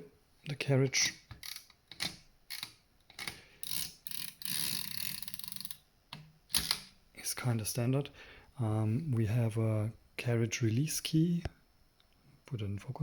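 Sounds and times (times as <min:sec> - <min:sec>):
fast ratcheting clicks: 0:02.5 - 0:05.8.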